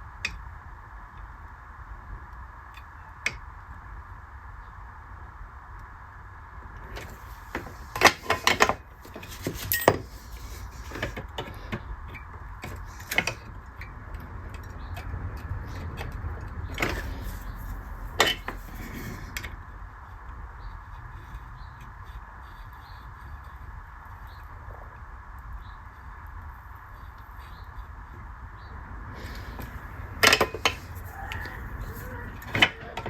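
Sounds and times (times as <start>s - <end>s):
steady low hum: 0.0s - 33.0s
metal tools clicking and scraping: 6.9s - 13.9s, 14.5s - 19.5s, 29.4s - 33.0s.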